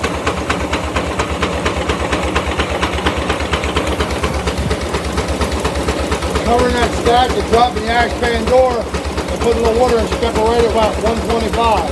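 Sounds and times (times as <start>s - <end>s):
steam engine exhaust chuffing: 0.0s - 11.9s.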